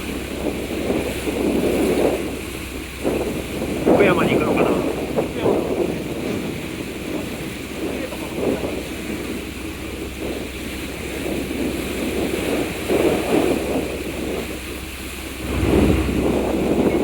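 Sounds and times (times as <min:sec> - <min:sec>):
low hum of ship: 0:00.0 - 0:17.0
water rushing along hull: 0:00.0 - 0:17.0
wind buffeting microphone: 0:00.0 - 0:17.0.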